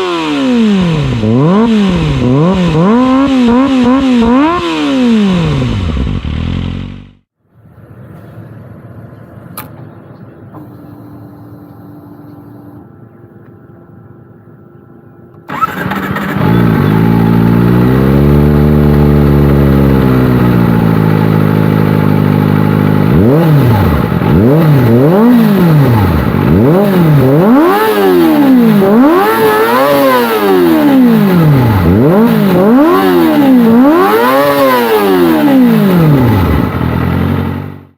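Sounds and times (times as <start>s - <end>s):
motorcycle engine revving: 0.0s - 7.3s, 15.5s - 37.9s.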